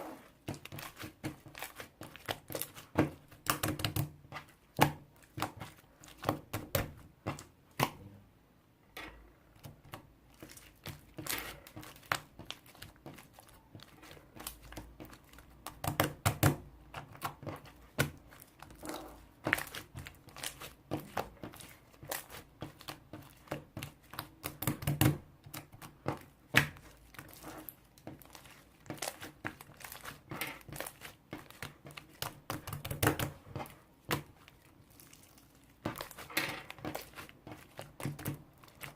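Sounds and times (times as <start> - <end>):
crinkling and rustling: 9.0 - 38.9.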